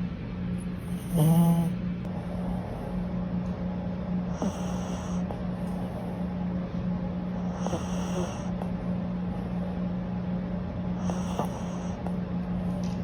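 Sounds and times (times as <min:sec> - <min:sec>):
puppy snoring: 0:00.6 - 0:03.4, 0:04.2 - 0:06.5, 0:07.2 - 0:10.3, 0:10.9 - 0:13.0.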